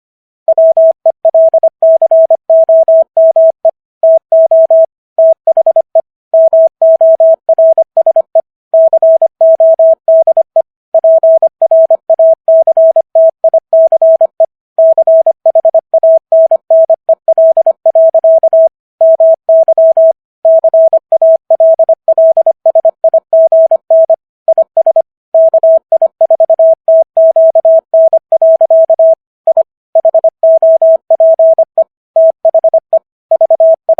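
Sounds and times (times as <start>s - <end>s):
morse code tone: 0.5s - 33.9s.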